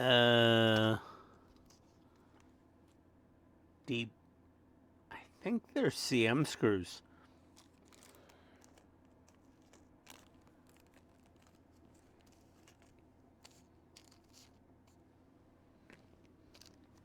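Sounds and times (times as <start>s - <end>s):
packets rustling: 7.3s - 15.0s, 15.8s - 17.0s
small parts clicking: 7.5s - 15.0s.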